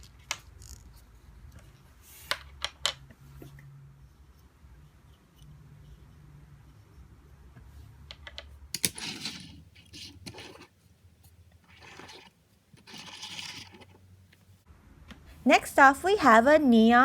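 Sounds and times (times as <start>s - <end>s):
plastic toy pieces clicking: 8.2s - 10.7s, 11.7s - 14.0s
rustling scraping bursts: 8.8s - 14.1s.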